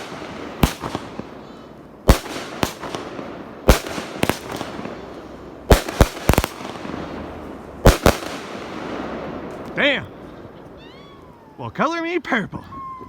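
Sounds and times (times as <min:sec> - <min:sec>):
firework cake bangs: 0:00.0 - 0:05.1.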